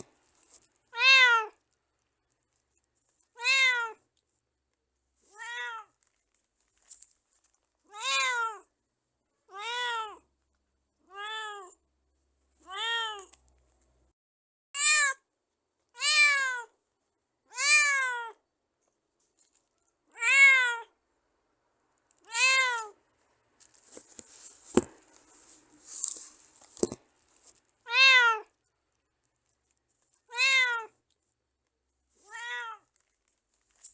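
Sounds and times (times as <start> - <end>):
cat meowing: 0.9 - 1.6, 3.4 - 4.0, 5.4 - 5.9, 7.9 - 8.6, 9.5 - 10.2, 11.1 - 11.7, 12.7 - 13.3, 17.5 - 18.4, 20.2 - 20.9, 22.3 - 23.0, 27.9 - 28.5, 30.3 - 31.0, 32.2 - 32.9.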